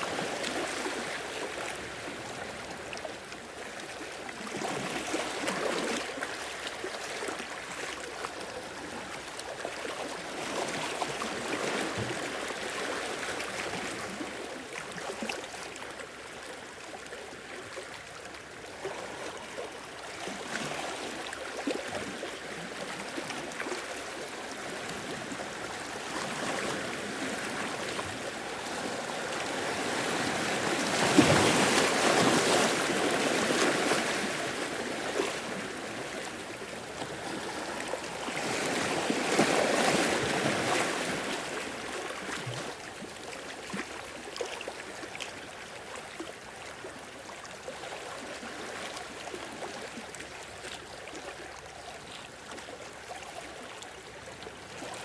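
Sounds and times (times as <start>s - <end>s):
sea waves washing ashore: 22.9s - 42.8s.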